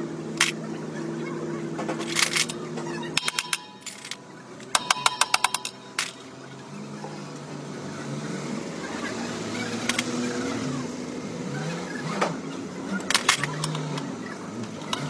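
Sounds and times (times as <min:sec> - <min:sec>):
steady background drone: 0:00.0 - 0:10.0
metal tools clinking: 0:03.2 - 0:06.4.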